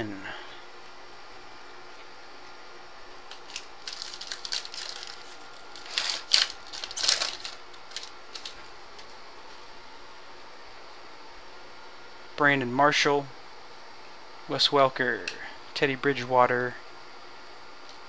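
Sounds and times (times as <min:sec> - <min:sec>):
wrapper torn open and crinkled: 0:03.3 - 0:08.6.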